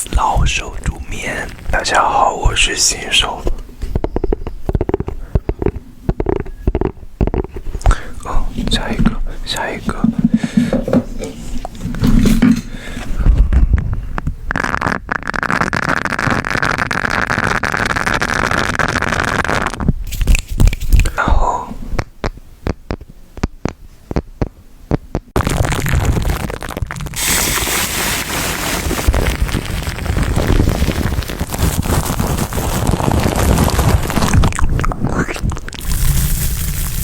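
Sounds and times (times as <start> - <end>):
steady hissing: 0.0 - 4.0, 35.8 - 37.0.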